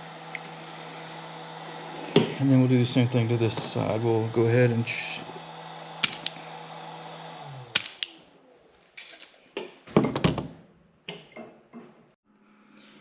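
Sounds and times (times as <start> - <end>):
sharp clicks of tools: 6.0 - 6.4, 7.7 - 8.2.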